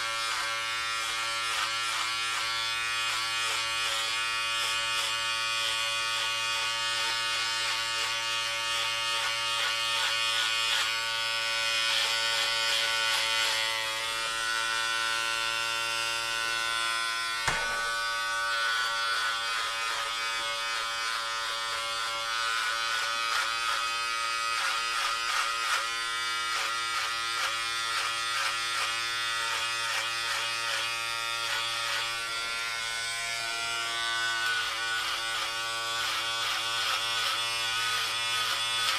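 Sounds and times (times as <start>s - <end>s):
electric hair clippers buzzing: 0.0s - 38.9s
sharp click: 17.4s - 18.0s.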